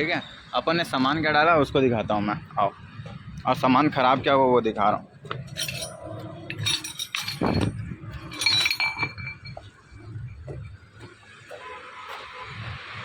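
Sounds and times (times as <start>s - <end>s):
metallic clinks: 5.4s - 9.6s.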